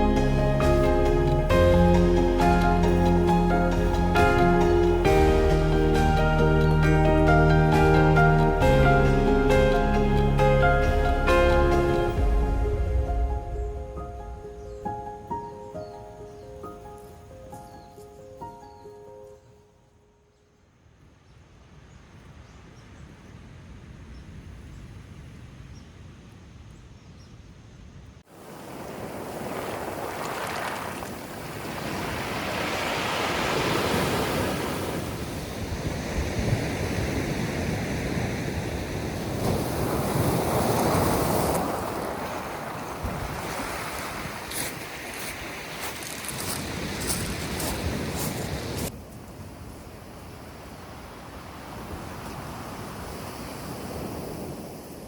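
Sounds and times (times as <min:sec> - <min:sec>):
ocean surf on shore: 0:00.0 - 0:15.7, 0:28.2 - 0:55.0
wind on microphone: 0:21.9 - 0:55.0.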